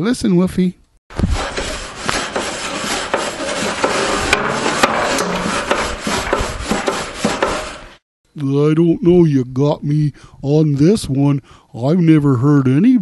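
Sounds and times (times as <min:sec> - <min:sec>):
wire brush scrubbing grill: 0:01.1 - 0:08.0.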